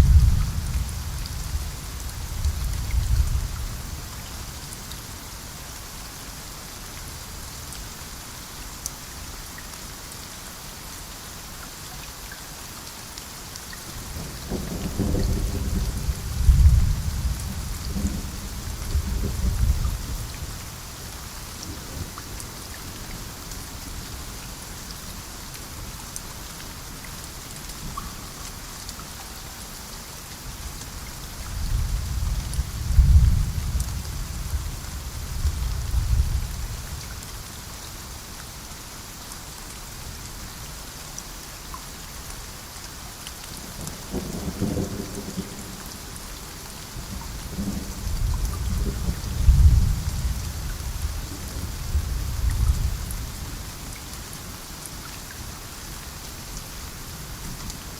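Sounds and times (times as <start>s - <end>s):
thunder rumbling: 0.0s - 1.7s, 14.2s - 20.3s
steady rain falling: 0.0s - 57.9s.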